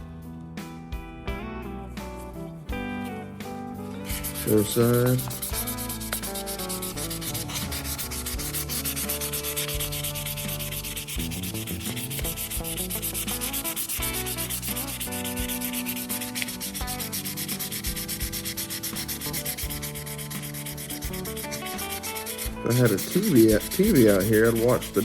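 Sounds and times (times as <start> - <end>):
sandpaper sanding a knife: 4.0 - 25.0.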